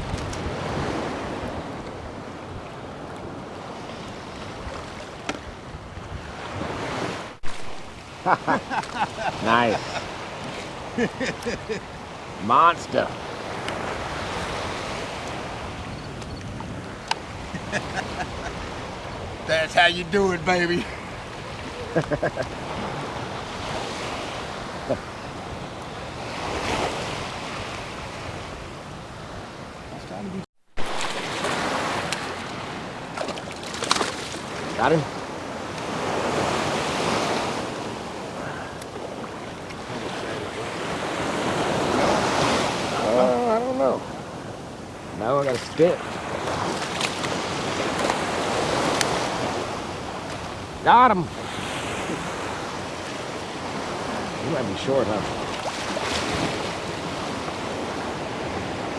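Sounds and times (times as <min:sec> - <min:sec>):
wind on microphone: 0:00.0 - 0:19.5
shallow water lapping: 0:00.0 - 0:58.9
wind: 0:00.0 - 0:58.9.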